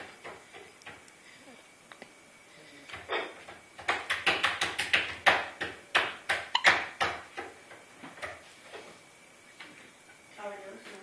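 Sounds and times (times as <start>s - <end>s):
sharp taps on a hard surface: 2.9s - 7.6s.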